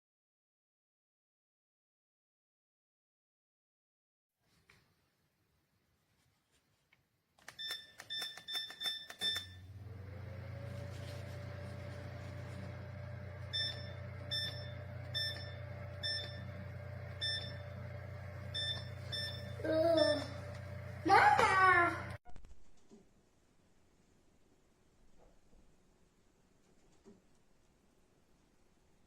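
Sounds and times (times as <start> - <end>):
electronic appliance beeping: 7.5 - 22.4
motor humming: 9.4 - 22.2.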